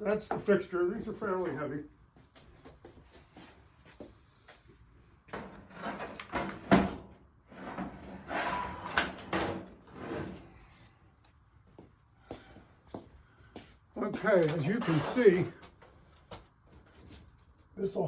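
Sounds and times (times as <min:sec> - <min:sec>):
sheet metal sliding and scraping: 0:05.4 - 0:10.7.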